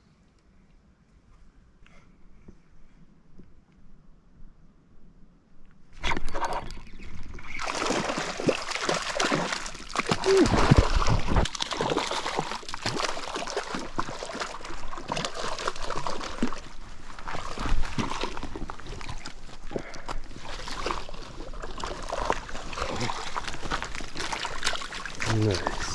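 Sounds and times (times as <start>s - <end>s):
water splashing and sloshing: 6.0s - 25.9s.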